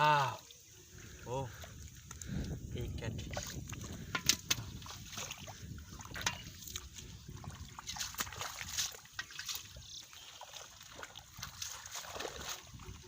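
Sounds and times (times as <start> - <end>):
water drips: 0.0 - 13.0
hands splashing in shallow water: 3.2 - 13.0.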